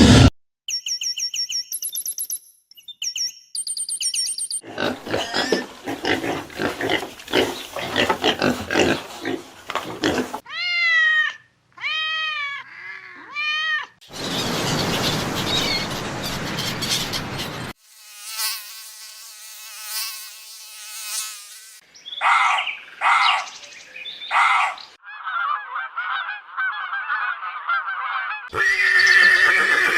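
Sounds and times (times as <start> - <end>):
rough grunting animal sounds: 4.6 - 10.4
rising and falling animal calls: 24.3 - 29.9.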